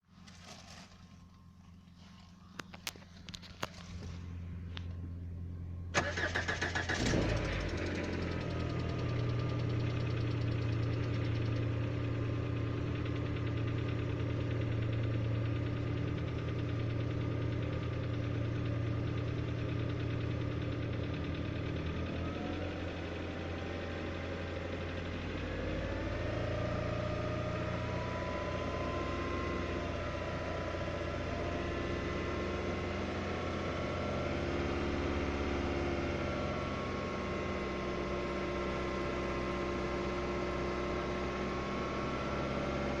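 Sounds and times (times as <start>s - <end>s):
car engine idling: 0.1s - 43.0s
engine knock or tick: 7.2s - 12.0s.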